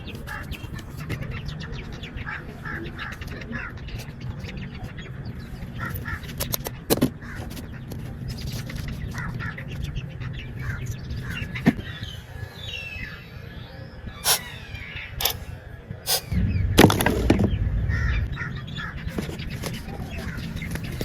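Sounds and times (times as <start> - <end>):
birds calling and chirping: 0.0 - 21.0.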